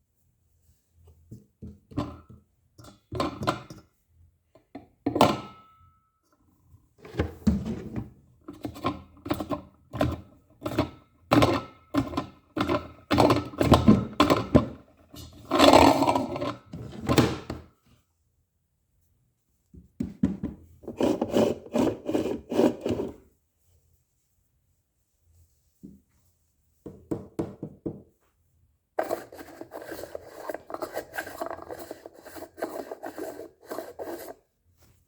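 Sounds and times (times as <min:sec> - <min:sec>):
irregular knocks and thuds: 0:19.8 - 0:20.6, 0:26.8 - 0:28.1.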